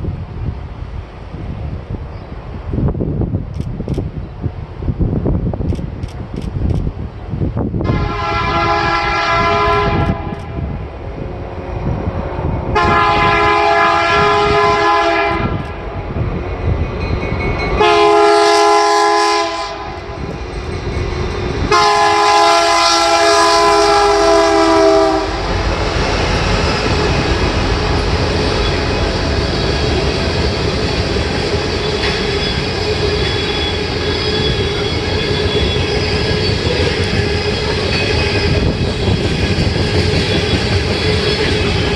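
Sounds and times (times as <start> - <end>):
train rumbling past: 0.0 - 41.9
clicking train wheels: 5.6 - 7.0, 19.8 - 41.9
locomotive air horn: 7.8 - 10.6, 12.8 - 15.7, 17.8 - 20.2, 21.7 - 25.6.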